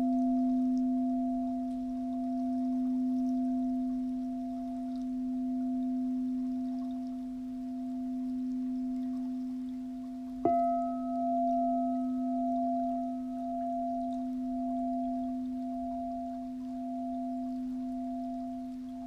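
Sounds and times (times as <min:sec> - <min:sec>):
singing bowl ringing: 0:00.0 - 0:19.0.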